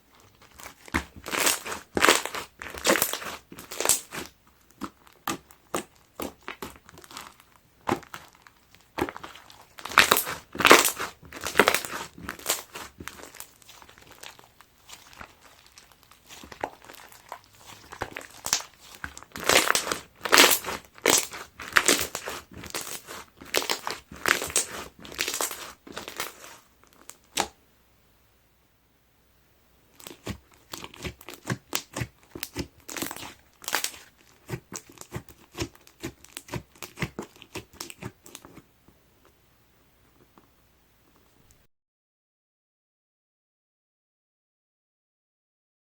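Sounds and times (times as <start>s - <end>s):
foam beads crackling in slime: 0.2s - 27.4s, 29.9s - 38.4s.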